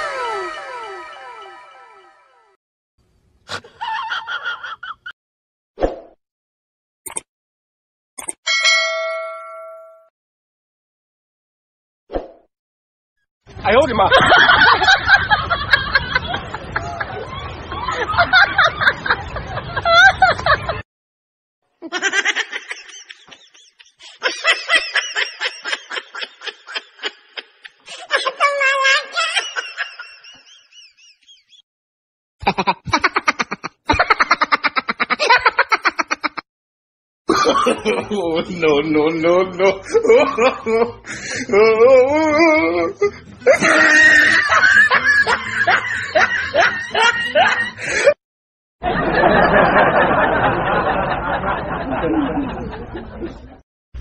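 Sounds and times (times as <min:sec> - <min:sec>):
wavering voice-like sound: 0:00.0 - 0:02.1
music: 0:00.0 - 0:02.6, 0:42.3 - 0:47.4
person giggling: 0:21.8 - 0:28.4, 0:32.4 - 0:36.4, 0:39.8 - 0:48.2
fast laughter-like syllables: 0:32.4 - 0:36.4, 0:43.0 - 0:48.2.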